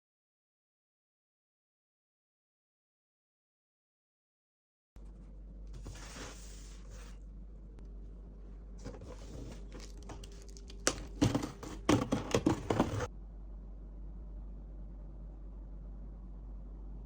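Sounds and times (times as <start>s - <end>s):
packaging rustling and crinkling: 8.9s - 13.1s.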